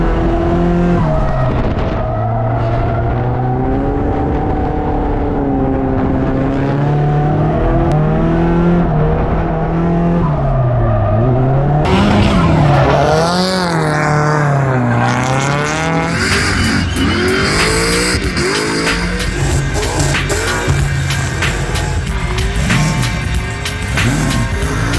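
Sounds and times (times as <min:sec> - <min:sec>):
car engine revving: 0:00.0 - 0:24.9
tyres squealing and skidding: 0:10.3 - 0:24.9.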